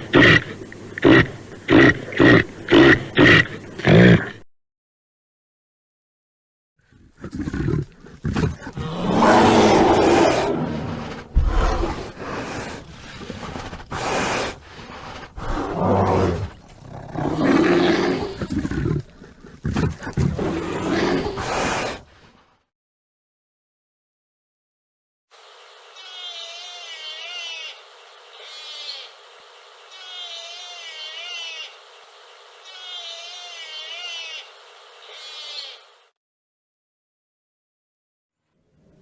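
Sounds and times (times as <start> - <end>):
bear growling and roaring: 0.0 - 4.4, 7.0 - 22.3.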